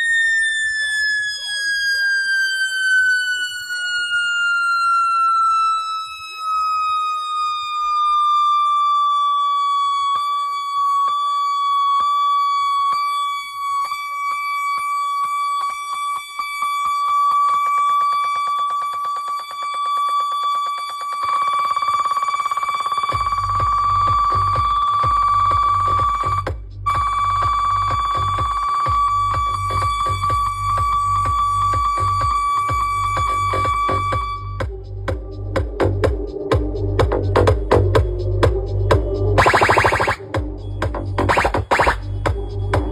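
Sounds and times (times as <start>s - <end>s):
siren-style tone sliding down: 0.0s - 34.6s, 39.4s - 40.2s, 41.2s - 42.1s
pulsing deep bass beat: 23.0s - 42.9s.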